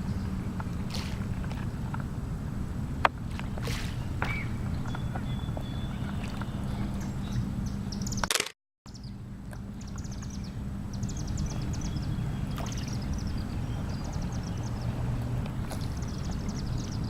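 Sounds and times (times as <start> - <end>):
steady low hum and rumble: 0.0 - 8.2, 8.9 - 17.0
small birds trilling: 4.0 - 8.3, 8.9 - 17.0.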